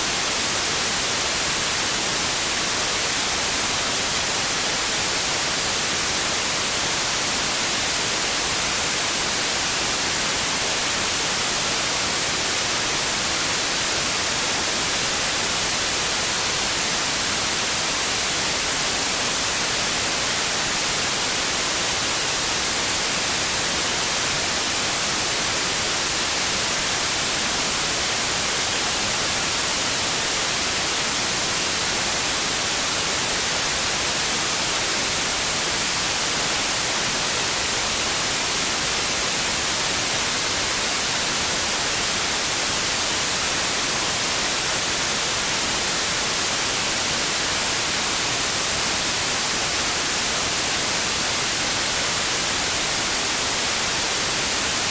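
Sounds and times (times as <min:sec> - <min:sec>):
steady white noise hiss: 0:00.0 - 0:54.9.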